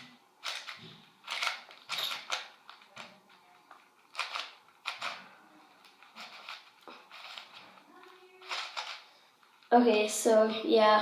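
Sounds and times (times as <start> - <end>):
plastic puzzle cube clicking: 0.0 - 5.2, 5.8 - 9.0.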